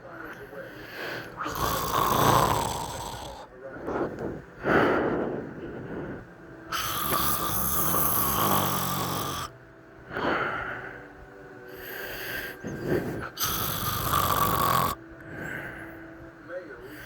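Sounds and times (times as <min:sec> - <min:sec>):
boy snoring loudly: 0:01.3 - 0:03.5, 0:06.7 - 0:09.5, 0:12.4 - 0:15.6.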